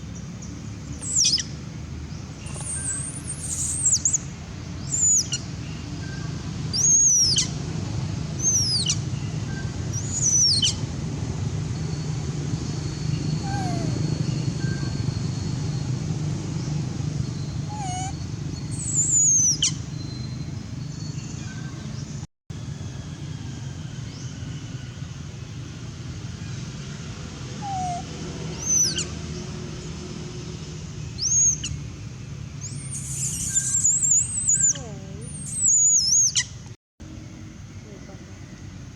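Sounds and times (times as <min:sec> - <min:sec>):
baby monkey squealing: 0:01.0 - 0:01.5, 0:02.5 - 0:04.2, 0:04.9 - 0:05.4, 0:06.8 - 0:07.6, 0:08.4 - 0:09.0, 0:09.9 - 0:10.8, 0:13.3 - 0:14.2, 0:17.6 - 0:19.8, 0:27.6 - 0:29.1, 0:31.2 - 0:31.8, 0:32.6 - 0:36.6.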